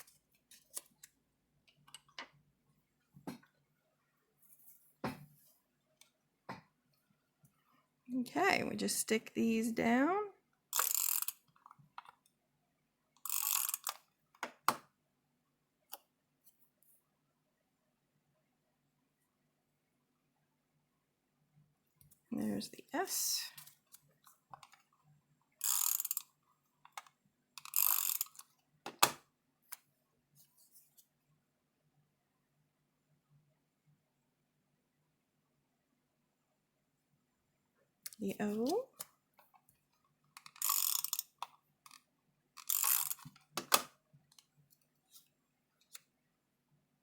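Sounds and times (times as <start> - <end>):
tape runner ratcheting: 10.8 - 11.4, 25.6 - 26.2, 27.6 - 28.4, 40.4 - 41.3, 42.6 - 43.8.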